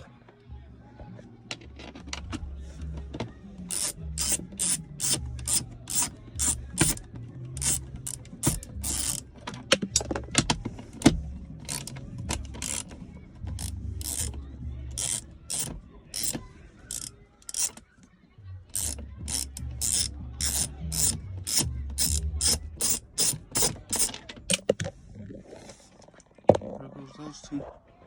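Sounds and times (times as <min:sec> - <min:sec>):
hand ratchet clicking: 0:03.7 - 0:10.2, 0:11.0 - 0:13.0, 0:13.6 - 0:17.8, 0:18.7 - 0:24.2.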